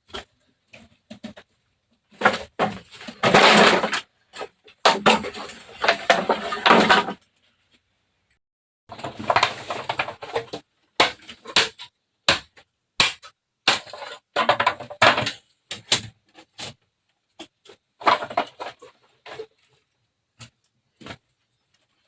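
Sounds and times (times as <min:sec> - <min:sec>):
hard objects knocking and scraping: 0:17.4 - 0:19.5.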